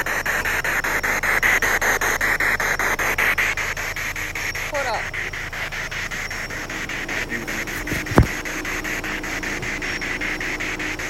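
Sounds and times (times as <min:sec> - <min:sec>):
sharp thump: 0:07.7 - 0:08.4.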